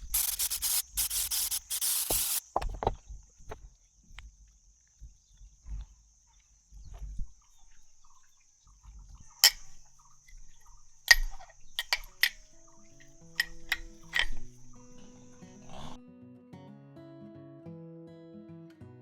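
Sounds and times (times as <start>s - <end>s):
high-pitched insect chirring: 0.0s - 2.5s, 9.2s - 16.0s.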